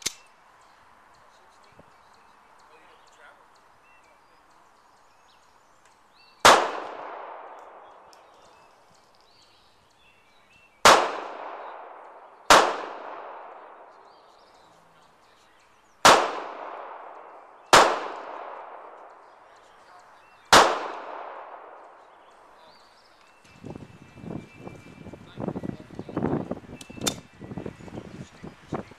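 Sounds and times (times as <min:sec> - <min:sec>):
handgun shots echoing: 0:00.0 - 0:00.3, 0:06.4 - 0:08.7, 0:10.8 - 0:14.3, 0:16.0 - 0:19.3, 0:20.5 - 0:22.1.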